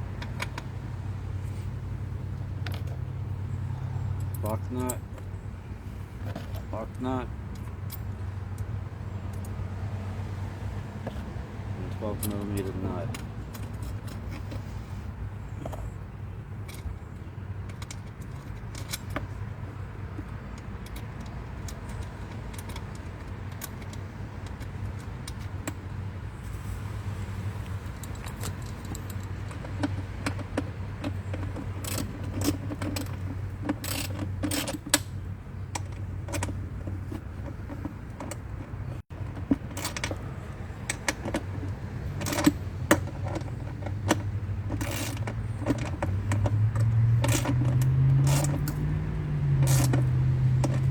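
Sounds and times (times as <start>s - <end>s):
metal clicks of wrench and nuts: 4.1s - 5.3s, 6.2s - 9.6s, 11.9s - 14.6s, 17.6s - 25.8s, 27.6s - 50.9s.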